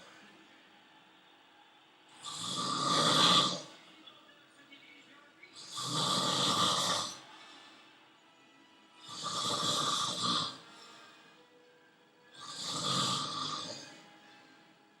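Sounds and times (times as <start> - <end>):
man snoring: 2.2 - 3.7, 5.6 - 7.2, 9.0 - 10.6, 12.3 - 14.0.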